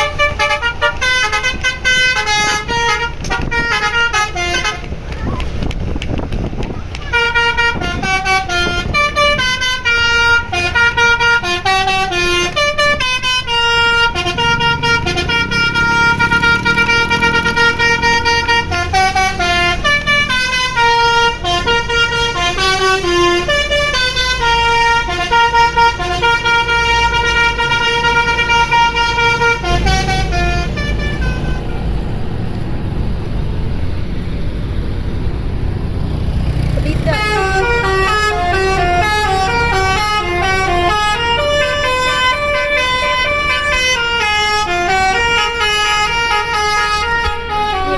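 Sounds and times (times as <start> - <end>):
musical bus horn melody: 0.0 - 5.0, 7.0 - 32.1, 36.8 - 47.9
bus engine rumbling: 0.0 - 47.9.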